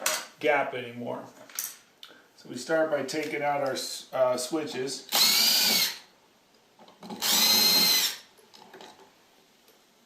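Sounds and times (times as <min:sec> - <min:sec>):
electric drill-driver whining: 0:05.1 - 0:06.0, 0:07.2 - 0:08.3.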